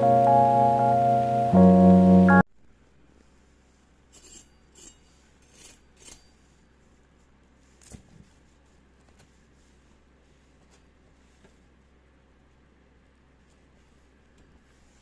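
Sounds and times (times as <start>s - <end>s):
kitchen utensils scraping: 4.2s - 6.4s.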